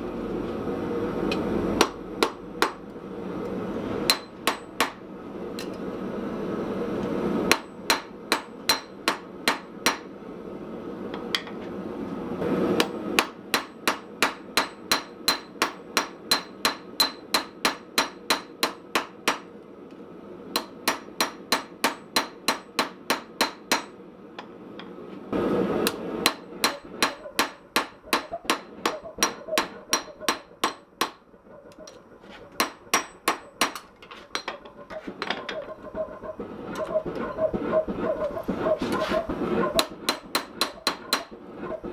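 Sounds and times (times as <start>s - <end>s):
hammer ringing on anvil: 7.5s - 10.0s, 12.8s - 19.4s, 28.8s - 31.2s, 32.6s - 33.8s.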